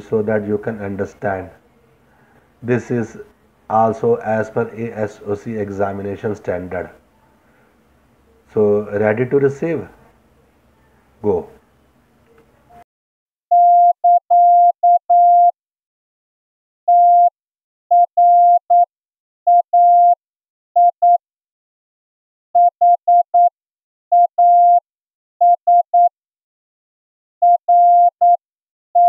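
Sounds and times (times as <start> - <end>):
morse code beeps: 13.5 - 15.5, 16.9 - 17.3, 17.9 - 18.9, 19.5 - 20.2, 22.6 - 23.5, 24.2 - 24.8, 25.4 - 26.1, 27.4 - 28.4.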